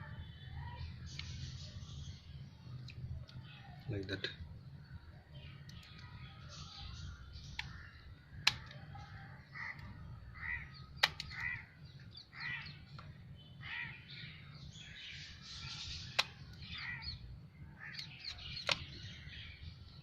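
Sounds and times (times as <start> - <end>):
sharp clicks: 5.6 - 6.1, 7.3 - 9.1, 10.7 - 12.1, 15.8 - 16.8, 17.9 - 19.1
bird calling: 5.8 - 19.6.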